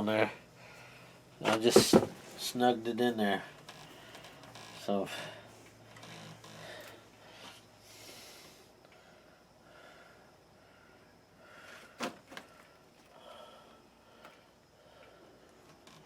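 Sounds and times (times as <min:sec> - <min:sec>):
handling noises: 0:01.4 - 0:02.4.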